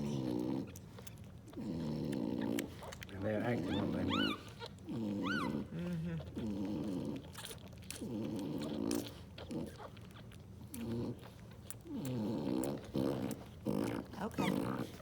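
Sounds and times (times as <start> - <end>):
puppies grunting and squeaking: 0.0 - 15.0
puppy high squeal: 3.6 - 5.6.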